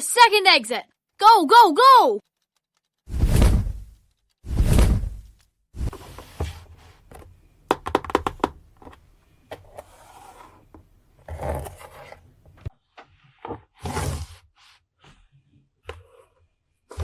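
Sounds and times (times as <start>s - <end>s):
plastic scraping and rustling: 5.8s - 12.7s
plastic clicks: 6.0s - 9.8s.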